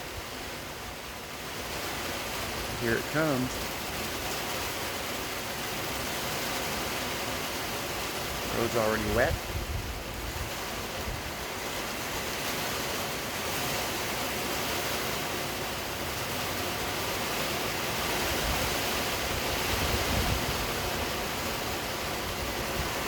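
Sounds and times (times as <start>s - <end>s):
rain falling: 0.0s - 23.0s
wind rumbling on microphone: 8.1s - 13.8s, 17.9s - 23.0s.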